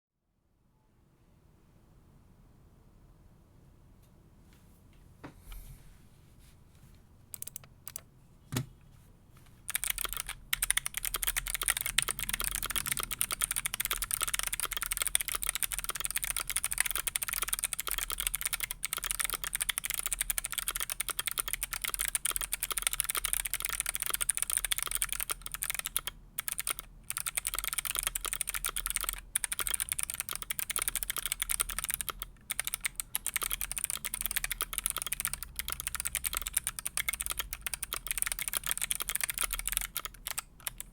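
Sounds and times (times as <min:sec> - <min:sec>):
fast typing on mechanical keyboard: 0:07.3 - 0:08.0, 0:09.7 - 0:40.9.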